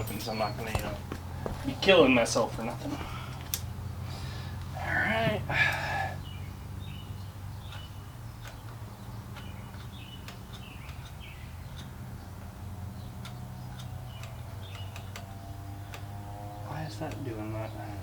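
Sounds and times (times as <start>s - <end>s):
birds chirping faintly: 0.0s - 18.0s.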